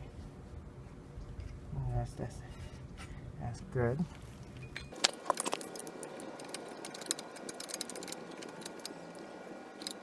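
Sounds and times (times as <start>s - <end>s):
ratchet wrench clicking: 5.4s - 9.0s.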